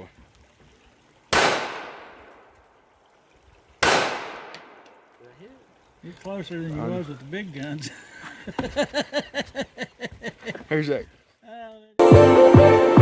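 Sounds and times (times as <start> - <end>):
gunshots with long echo: 1.3 - 2.5, 3.8 - 5.1.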